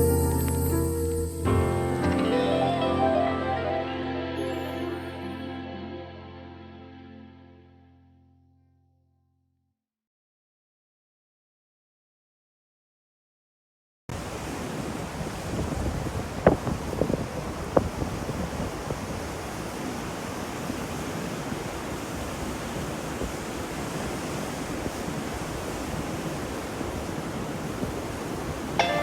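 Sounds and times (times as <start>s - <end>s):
steady rain hiss: 14.1s - 29.0s.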